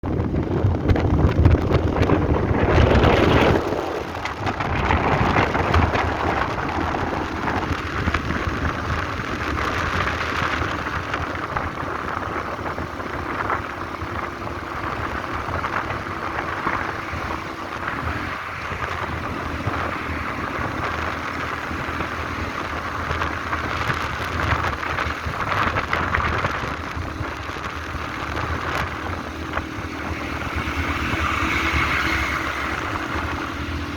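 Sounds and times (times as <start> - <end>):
wind buffeting microphone: 0.0 - 33.9.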